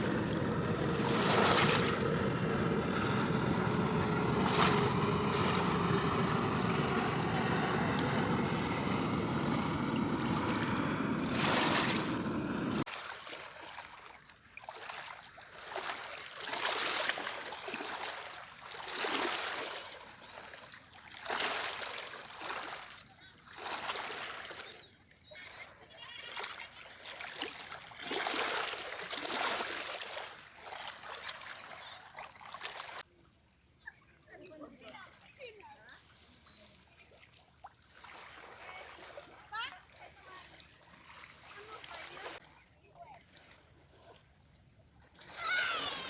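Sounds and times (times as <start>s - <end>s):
engine drone: 0.0s - 12.8s
waves washing on shore: 0.0s - 13.9s, 45.2s - 46.0s
water noise: 0.0s - 33.6s, 34.7s - 46.0s
wind: 0.0s - 46.0s.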